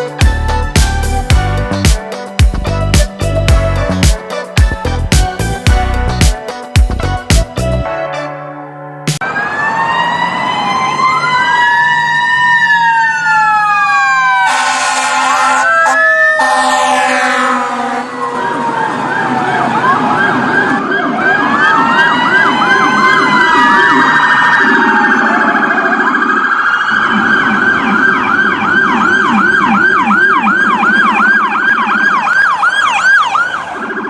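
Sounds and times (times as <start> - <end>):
emergency vehicle siren: 0.0 - 1.6, 9.2 - 34.0
lower pulsing siren tone: 9.2 - 34.0.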